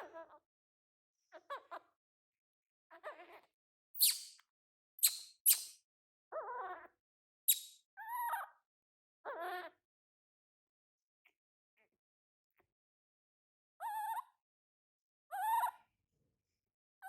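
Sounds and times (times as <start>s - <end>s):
baby monkey wavering cries: 2.9s - 4.3s, 5.0s - 5.7s, 7.5s - 8.6s
baby monkey squeaks: 2.9s - 4.4s, 5.0s - 5.8s, 7.5s - 8.6s, 13.8s - 14.4s, 15.3s - 15.8s.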